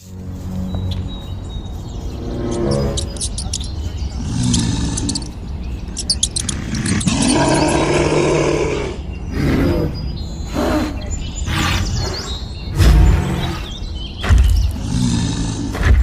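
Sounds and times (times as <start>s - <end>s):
tiger roaring: 4.2s - 5.4s, 6.4s - 13.8s, 14.7s - 16.0s.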